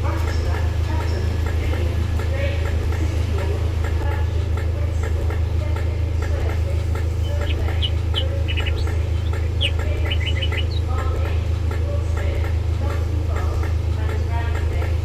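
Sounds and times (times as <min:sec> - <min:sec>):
electric train humming: 0:06.5 - 0:11.6.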